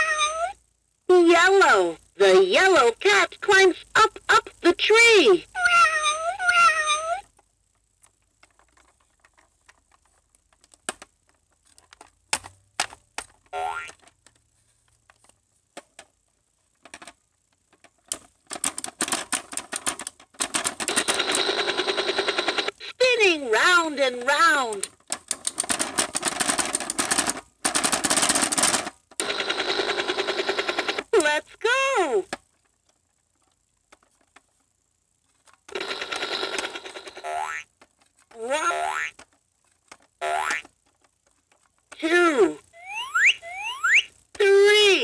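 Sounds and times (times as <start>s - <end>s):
plastic toy tapping and clicking: 7.3s - 14.4s, 16.8s - 22.7s, 24.3s - 29.4s, 39.0s - 42.0s
toy helicopter rattling: 16.8s - 22.8s, 23.6s - 32.7s, 35.4s - 44.4s.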